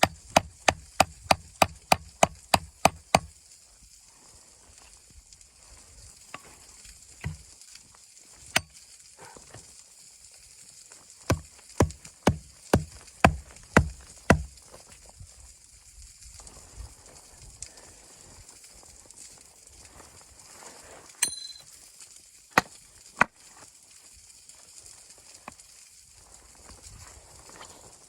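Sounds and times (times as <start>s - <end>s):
sharp knocks: 0.0s - 3.3s, 11.3s - 14.5s
faint steady hiss: 2.2s - 28.0s.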